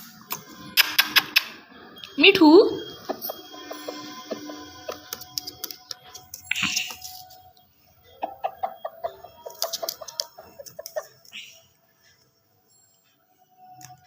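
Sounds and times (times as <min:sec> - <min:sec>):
sharp clicks: 0:00.3 - 0:01.6.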